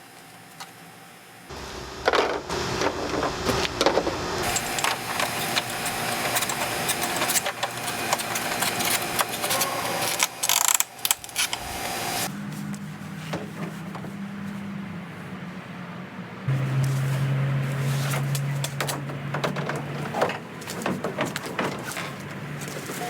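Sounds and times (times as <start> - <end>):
knocking and clattering: 18.6 - 22.4.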